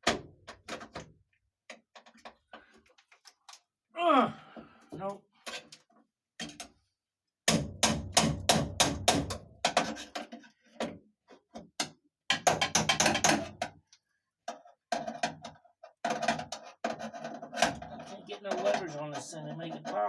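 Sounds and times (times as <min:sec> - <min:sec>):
tool knocking on car window crank: 0:12.3 - 0:13.6.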